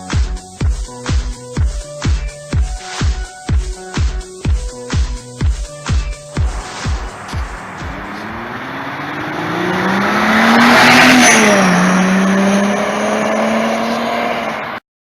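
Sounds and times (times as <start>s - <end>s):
car engine accelerating: 6.4s - 14.8s.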